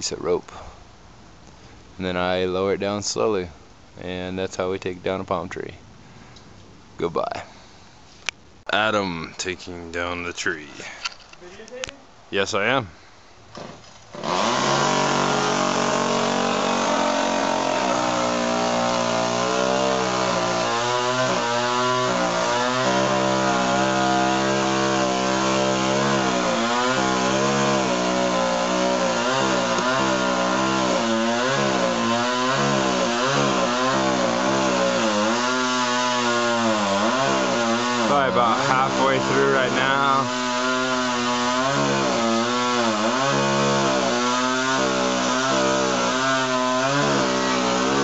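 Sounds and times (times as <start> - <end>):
chainsaw cutting wood: 13.5 - 48.0.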